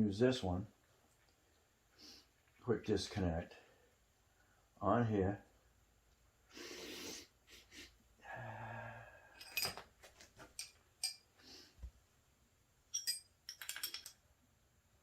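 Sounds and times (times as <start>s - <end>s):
metal hose fittings clicking: 10.4s - 11.3s, 12.9s - 14.2s.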